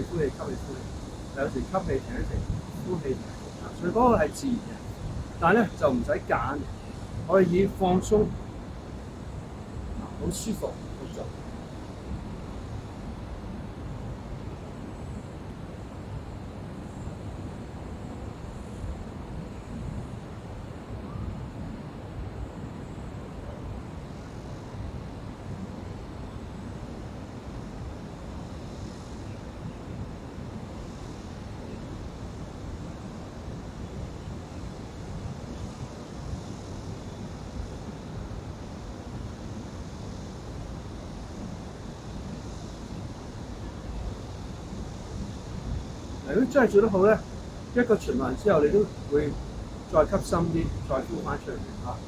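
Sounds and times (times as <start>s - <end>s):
low background rumble: 0.0s - 12.6s, 45.0s - 52.0s
low rumbling background noise: 0.0s - 52.0s.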